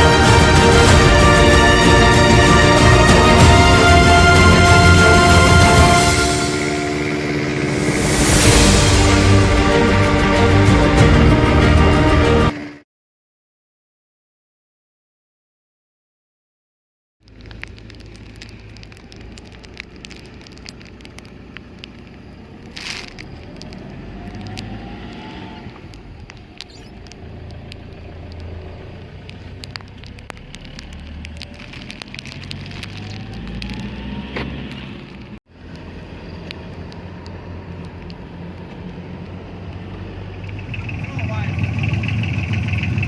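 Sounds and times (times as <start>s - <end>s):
boat engine rumbling: 0.0s - 12.6s, 36.1s - 43.0s
slow rising whine: 0.0s - 12.7s
scattered clicks: 17.2s - 34.0s.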